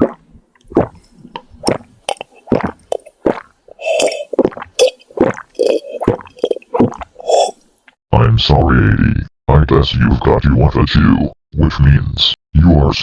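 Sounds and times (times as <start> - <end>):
cartoon wet gulping: 0.0 - 7.7.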